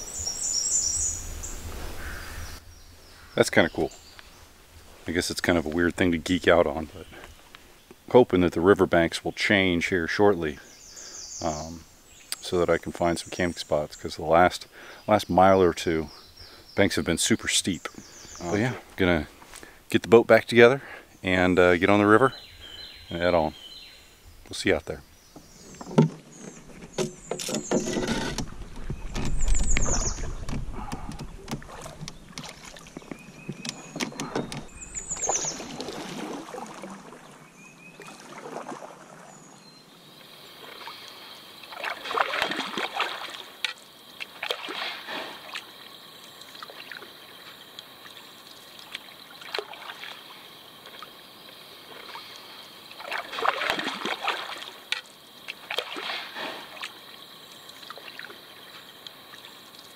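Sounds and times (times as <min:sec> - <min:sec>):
gear knocking against canoe hull: 0:25.3 - 0:35.6
paddle strokes: 0:25.3 - 0:39.5, 0:40.5 - 0:59.9
water washing against canoe: 0:25.3 - 0:39.5, 0:40.3 - 0:59.9.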